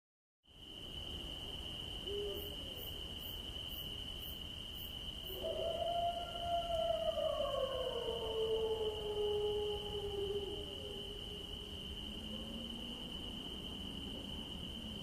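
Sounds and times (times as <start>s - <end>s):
insects droning: 0.5s - 15.0s
owl hoot: 2.1s - 2.8s
long wailing call: 5.3s - 13.4s.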